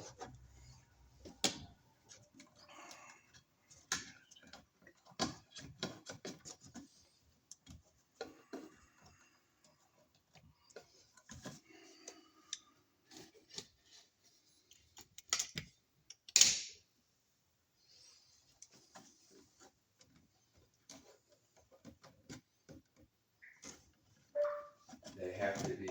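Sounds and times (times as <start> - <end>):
small clicks and taps: 14.6 - 16.8.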